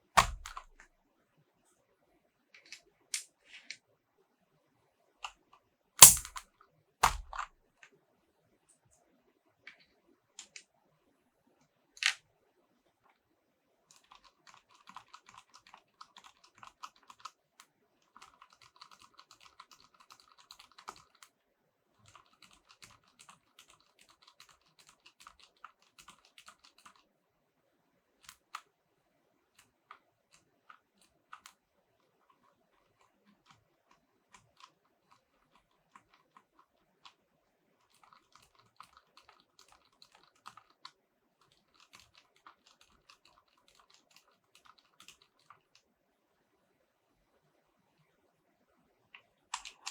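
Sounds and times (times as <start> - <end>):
mechanical keyboard typing: 0.1 - 0.8, 6.0 - 6.4, 7.0 - 7.5, 13.9 - 17.4, 18.1 - 21.3, 22.0 - 27.1, 32.9 - 37.2, 37.8 - 45.8, 49.5 - 49.9.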